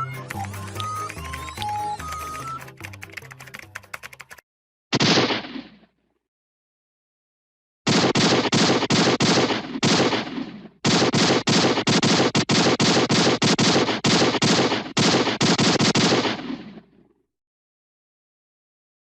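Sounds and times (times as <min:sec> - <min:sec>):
rapid gunfire: 0:05.0 - 0:05.6, 0:07.9 - 0:16.8.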